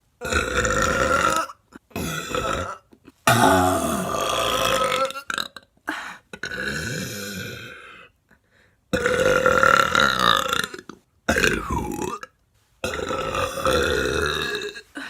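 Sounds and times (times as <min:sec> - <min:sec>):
woman burping loudly: 0:00.2 - 0:08.2, 0:08.9 - 0:15.0.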